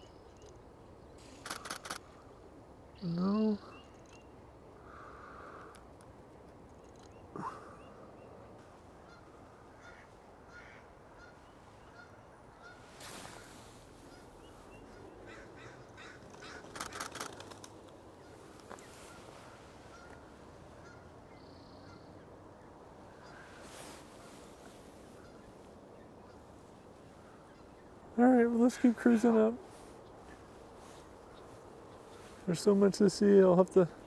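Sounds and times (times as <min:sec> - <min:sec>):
geese honking: 0:19.0 - 0:21.1.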